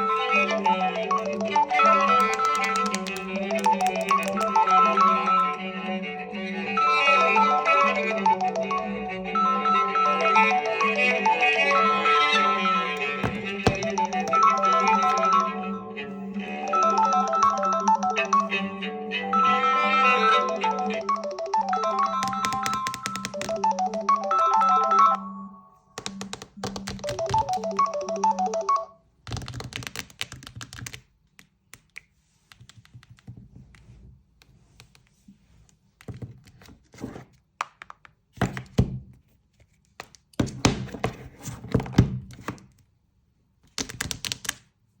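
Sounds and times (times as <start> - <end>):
phone ringtone melody: 0.0 - 5.9, 6.6 - 29.0
irregular clicks and thunks: 13.0 - 14.6, 26.0 - 28.6.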